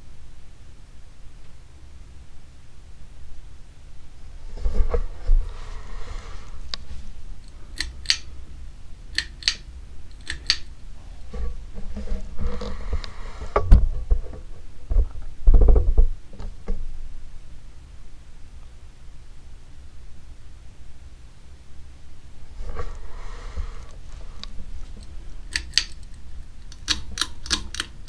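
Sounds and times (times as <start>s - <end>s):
handling rustling: 4.2s - 8.4s
sharp clicks: 7.4s - 8.3s, 9.1s - 10.7s, 25.5s - 28.0s.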